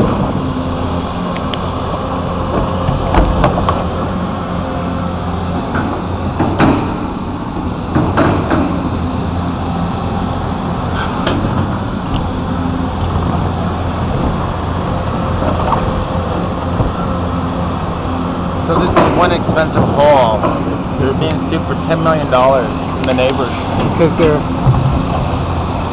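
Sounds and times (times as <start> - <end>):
backhoe engine running: 0.0 - 25.9
sharp knocks and clanks: 2.5 - 3.9, 5.6 - 9.0, 10.9 - 12.3, 18.7 - 20.8, 23.0 - 25.3.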